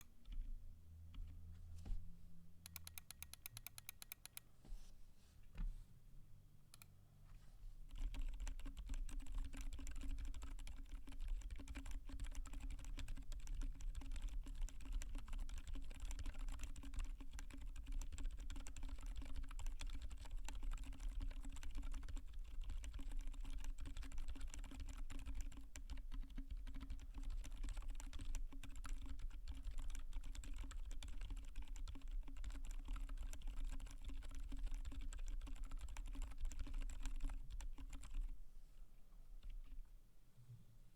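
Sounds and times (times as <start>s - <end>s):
typing on keyboard: 2.7s - 4.4s, 7.9s - 38.3s.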